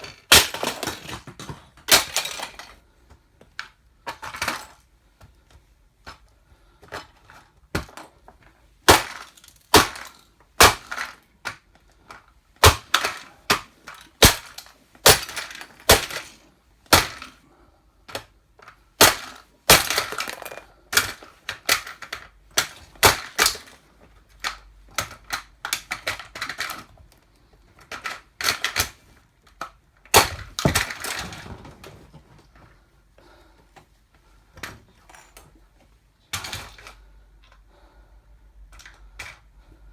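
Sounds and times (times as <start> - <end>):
toy car cracking under heels: 0.0 - 2.8, 8.8 - 17.4, 18.1 - 27.0, 27.8 - 32.4.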